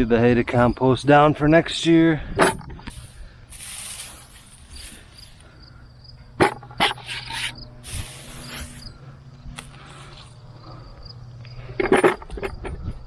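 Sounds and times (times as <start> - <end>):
faint insect chirping: 0.0 - 13.0
hay rustling: 3.0 - 5.4.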